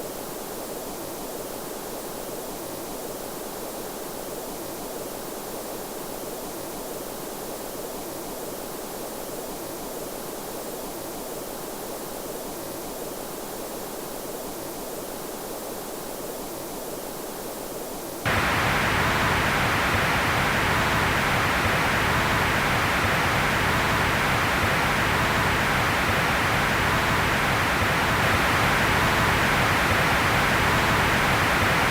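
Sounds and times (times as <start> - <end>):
bright loud hiss: 18.3 - 31.9
muffled hiss: 18.3 - 31.9.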